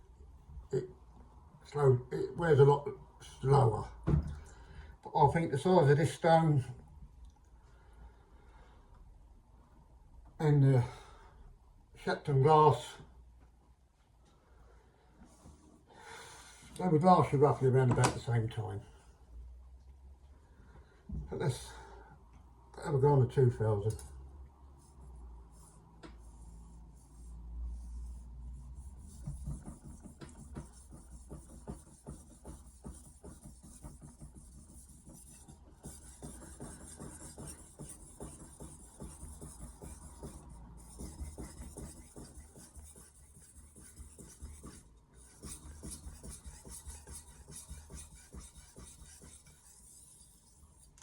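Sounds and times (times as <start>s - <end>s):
knife rasping on whetstone: 28.9s - 50.6s.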